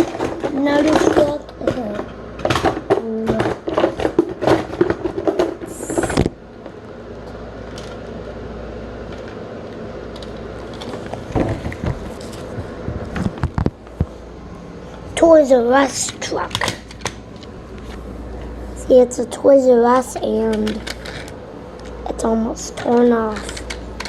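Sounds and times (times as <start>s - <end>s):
toy trucks clicking and rattling: 0.0s - 6.2s, 20.0s - 22.0s, 22.7s - 23.8s.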